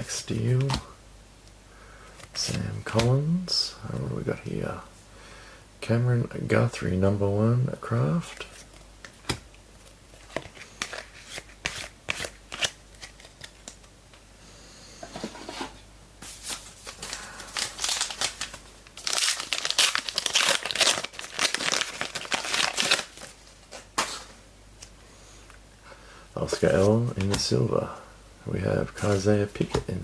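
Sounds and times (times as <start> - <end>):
foil pack crinkling and tearing: 16.5 - 23.9.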